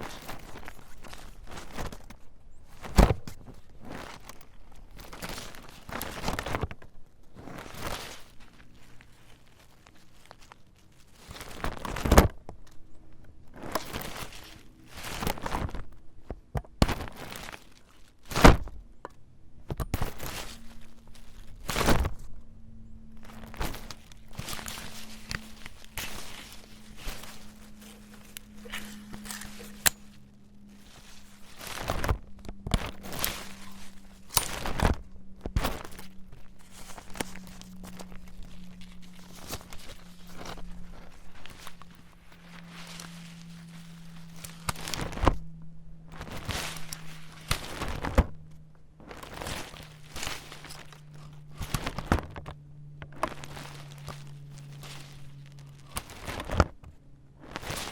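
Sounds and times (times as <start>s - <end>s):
umbrella canopy rustling: 0.0s - 57.9s
umbrella frame clicking: 23.3s - 35.9s.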